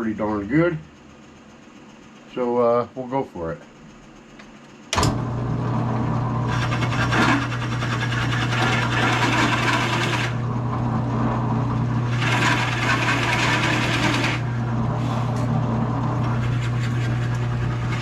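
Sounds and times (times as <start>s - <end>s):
drill press motor running: 3.8s - 18.0s
drill bit boring into wood: 6.5s - 10.4s, 12.0s - 14.6s, 16.2s - 18.0s.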